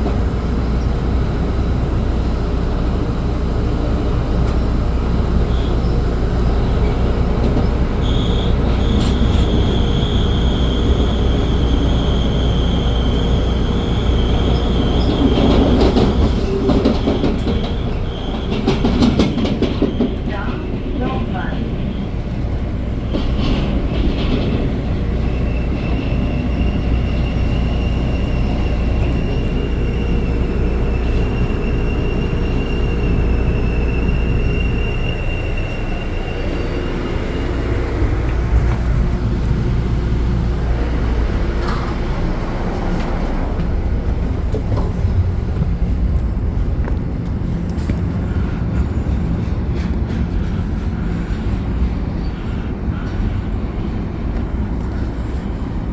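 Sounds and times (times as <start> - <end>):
train rumbling past: 0.0 - 55.9
high wheel squeal: 5.4 - 21.2, 24.6 - 39.2.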